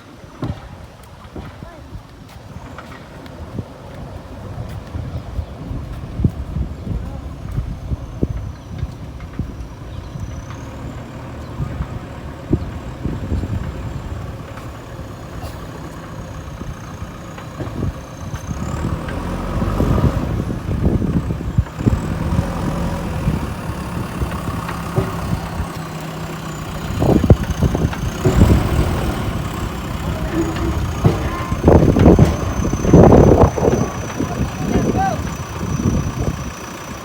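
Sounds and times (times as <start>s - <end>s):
diesel engine running: 2.5s - 37.0s
clanks and knocks: 23.4s - 35.5s.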